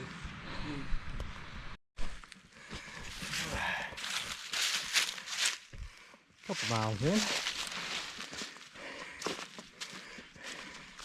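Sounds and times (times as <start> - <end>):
boots scraping on rock: 6.5 - 8.6.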